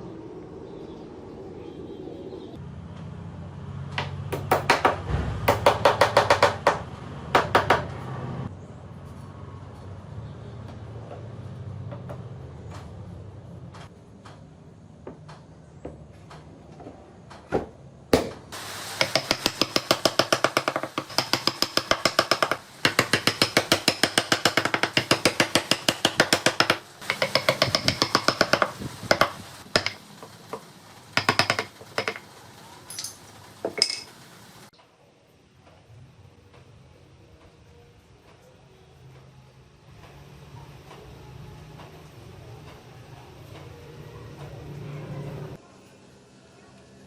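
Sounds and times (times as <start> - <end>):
hammer tapping chisel into wood: 19.0 - 30.6, 31.2 - 32.2.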